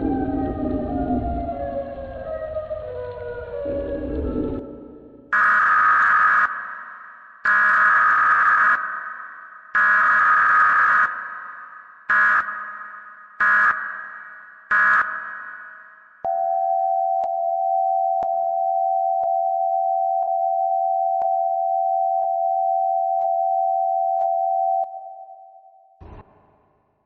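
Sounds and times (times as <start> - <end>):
long steady lower tone: 16.2 - 25.9.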